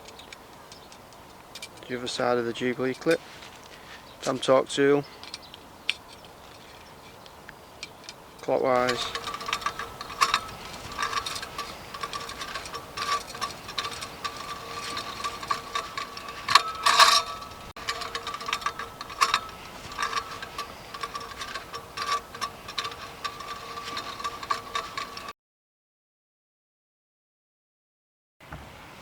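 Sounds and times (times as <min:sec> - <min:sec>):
metal clatter: 0:07.8 - 0:25.3
ratchet tool clicking: 0:07.8 - 0:25.3.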